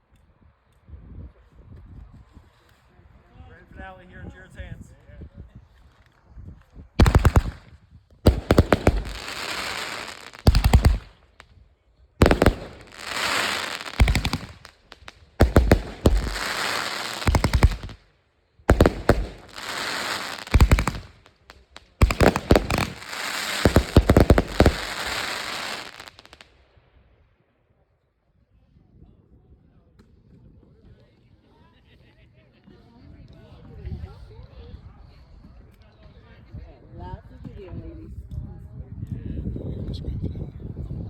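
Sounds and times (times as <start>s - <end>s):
fireworks hissing: 7.0s - 7.6s, 8.3s - 11.4s, 12.2s - 18.0s, 18.7s - 26.4s
fireworks loud bangs: 7.0s - 7.7s, 8.3s - 11.4s, 12.2s - 18.0s, 18.7s - 26.4s.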